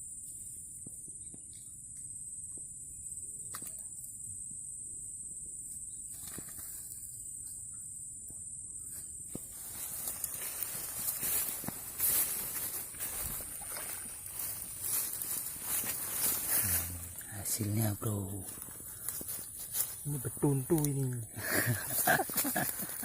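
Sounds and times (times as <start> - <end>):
high-pitched insect drone: 0.0 - 23.0
rustling handling noise: 9.5 - 21.1.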